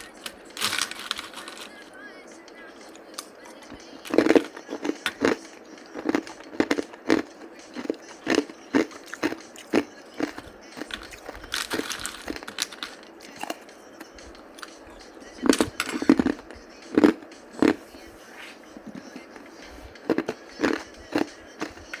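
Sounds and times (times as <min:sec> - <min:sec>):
ice being chewed crunching: 0:00.6 - 0:01.7, 0:03.6 - 0:17.8, 0:19.9 - 0:22.0.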